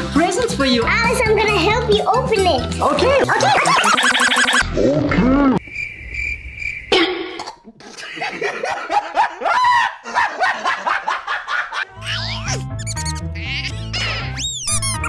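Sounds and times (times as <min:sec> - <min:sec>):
steady high tone: 0:03.3 - 0:04.6
coughs grunts and laughs: 0:07.4 - 0:09.1.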